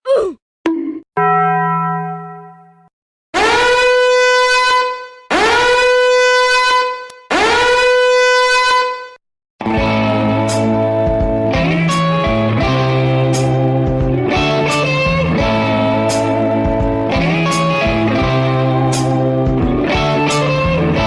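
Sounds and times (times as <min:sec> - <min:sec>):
ringing tone: 0:01.2 - 0:02.9
long horn blasts: 0:03.4 - 0:09.2.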